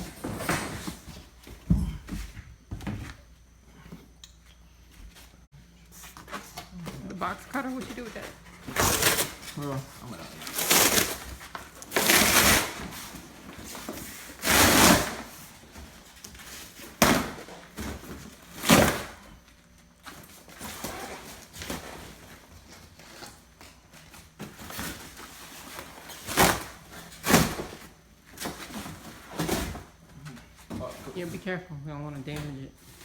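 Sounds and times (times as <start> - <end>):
cardboard ripping: 8.6 - 13.2, 14.0 - 15.3.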